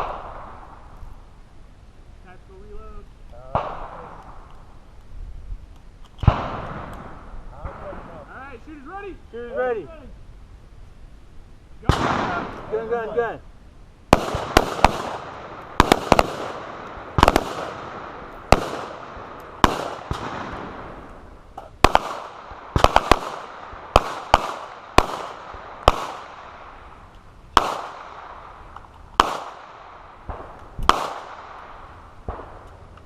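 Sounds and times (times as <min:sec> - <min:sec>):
gunshots with ringing echo: 0:14.1 - 0:21.0, 0:21.8 - 0:26.6, 0:27.6 - 0:28.6, 0:29.2 - 0:32.6.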